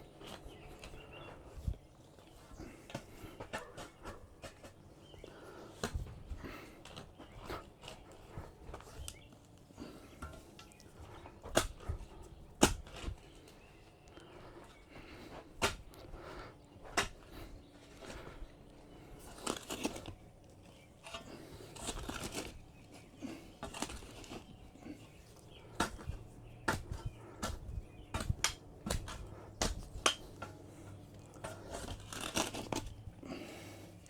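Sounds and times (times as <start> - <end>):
crunching and scraping: 0.0 - 34.0.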